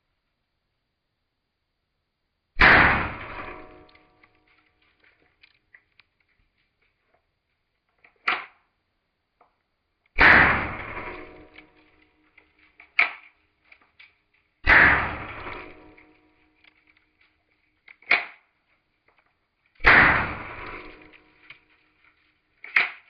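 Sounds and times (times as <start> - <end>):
blank revolver gunshot: 2.6 - 3.9, 10.2 - 11.5, 14.6 - 16.0, 19.8 - 21.1.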